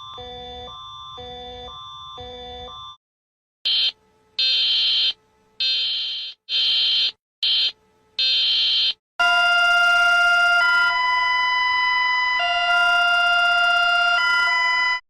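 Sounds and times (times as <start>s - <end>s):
harsh electronic alarm buzzer: 3.7s - 15.0s
steady multi-pitch alarm tone: 3.7s - 15.0s.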